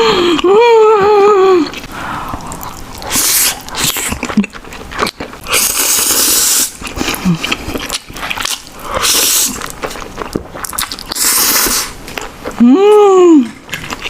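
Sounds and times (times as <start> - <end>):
chewing and mouth clicks: 1.7 - 12.6, 13.5 - 14.0
noodles being slurped: 1.8 - 12.0.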